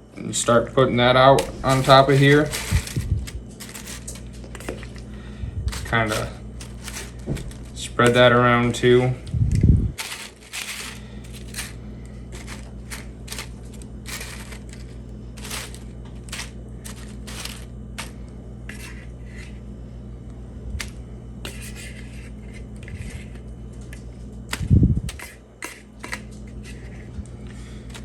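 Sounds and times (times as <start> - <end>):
steady low hum: 0.0 - 28.0
utensil scraping and clinking a bowl: 1.4 - 5.0, 5.7 - 8.4, 10.0 - 19.6.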